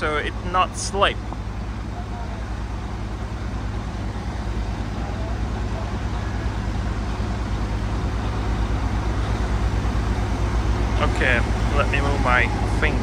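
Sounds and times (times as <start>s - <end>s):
heavy diesel engine running: 0.0s - 13.0s.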